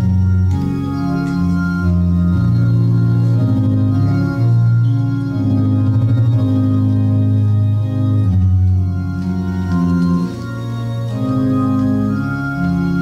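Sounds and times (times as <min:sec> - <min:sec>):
organ playing slow chords: 0:00.0 - 0:13.0.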